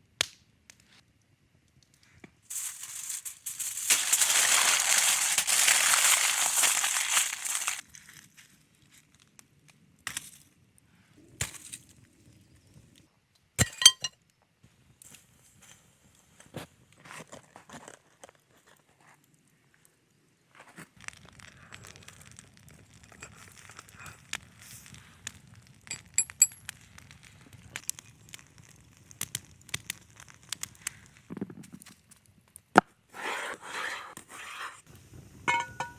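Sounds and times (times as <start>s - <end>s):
campfire crackling: 2.5s - 7.8s, 27.8s - 31.0s
hard objects clinking: 2.5s - 7.8s, 13.6s - 14.1s, 25.9s - 26.6s.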